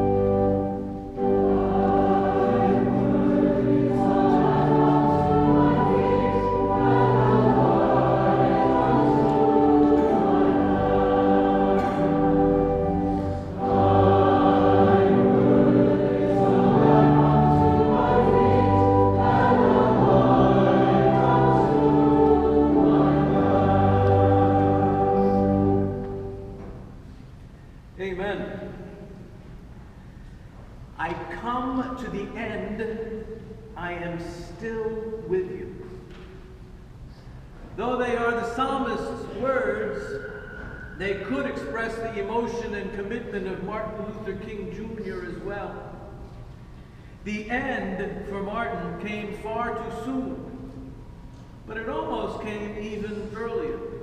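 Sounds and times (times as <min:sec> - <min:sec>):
choir singing a hymn: 0:00.0 - 0:26.9.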